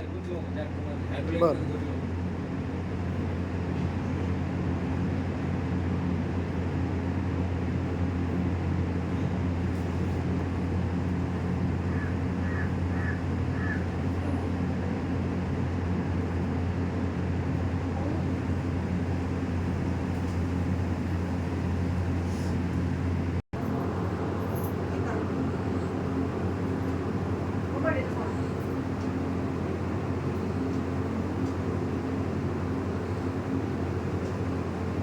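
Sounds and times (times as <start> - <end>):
low mechanical motor hum: 0.0 - 35.0.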